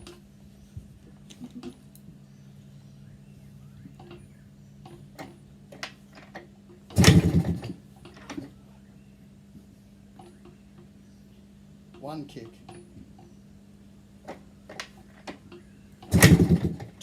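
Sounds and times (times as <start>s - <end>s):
motorcycle engine kickstart churn: 6.9s - 8.5s, 16.0s - 17.0s.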